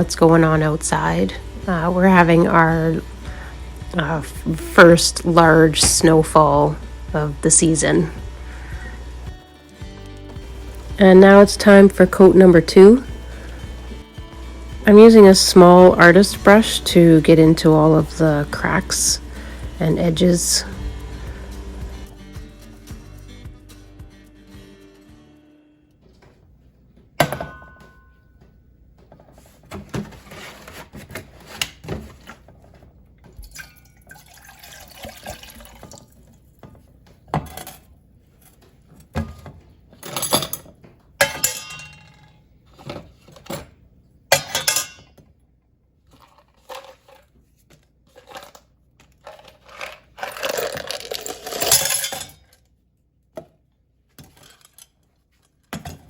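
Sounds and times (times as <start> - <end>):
water running: 0.0 - 9.4, 10.0 - 22.1, 33.2 - 36.6
clinks of small hard objects: 49.7 - 52.6.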